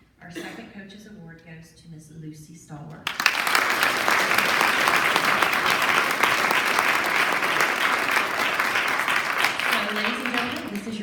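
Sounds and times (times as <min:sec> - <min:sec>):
large audience clapping: 0:03.0 - 0:11.0.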